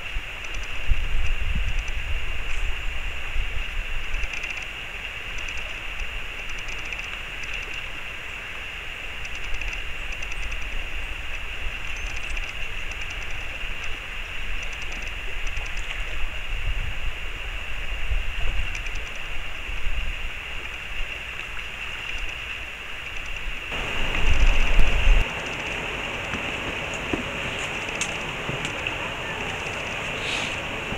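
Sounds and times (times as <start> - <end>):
wind rumbling on microphone: 0.0 - 30.9
stream water rushing: 2.8 - 30.9.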